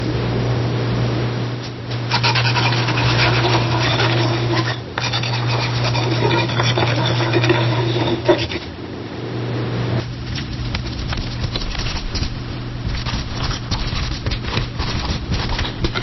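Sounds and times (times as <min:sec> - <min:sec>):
steady low hum: 0:00.0 - 0:16.0
pencil scratching on paper: 0:02.1 - 0:08.6, 0:12.9 - 0:16.0.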